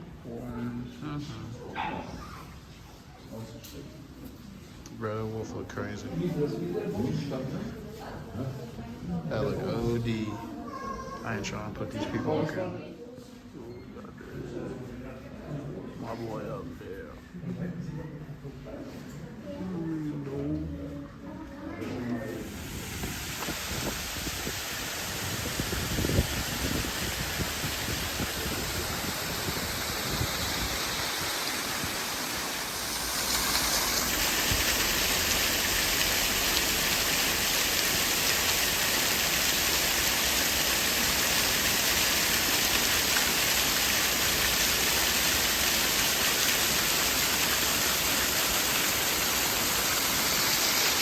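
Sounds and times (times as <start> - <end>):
running water rushing: 22.1 - 51.0.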